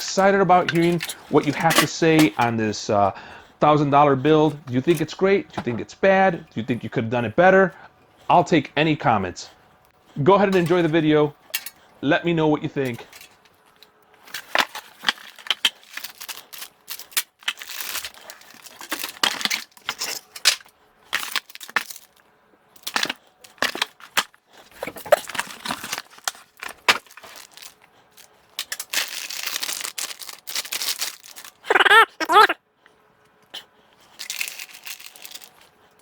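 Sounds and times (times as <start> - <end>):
packaging rustling: 0.0 - 2.6, 12.9 - 22.2, 22.8 - 32.4, 34.1 - 35.8
packaging crinkling and tearing: 13.7 - 22.2, 22.8 - 32.6, 34.1 - 35.8.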